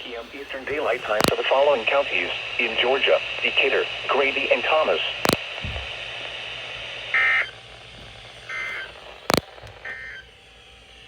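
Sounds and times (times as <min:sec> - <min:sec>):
radio hiss: 0:00.0 - 0:10.3
sharp click: 0:09.3 - 0:09.5.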